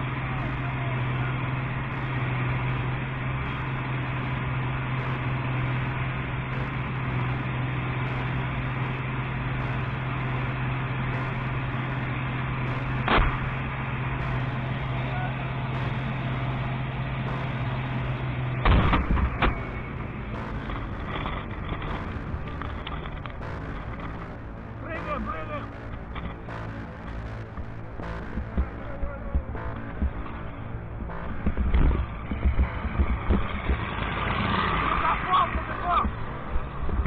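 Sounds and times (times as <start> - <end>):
track noise: 0.0 - 37.0
vehicle engine drone: 0.0 - 37.0
sharp crack: 3.4 - 36.7
loud bang: 12.7 - 36.3.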